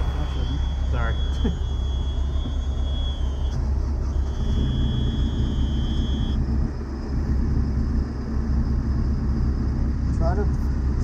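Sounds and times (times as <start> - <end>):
faint high whine: 0.0 - 6.4
diesel engine idling: 0.0 - 11.0.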